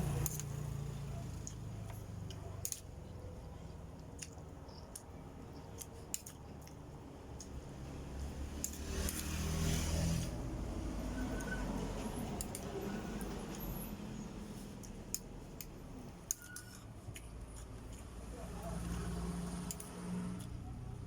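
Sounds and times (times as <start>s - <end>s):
person chewing: 3.6s - 7.7s, 14.6s - 20.6s.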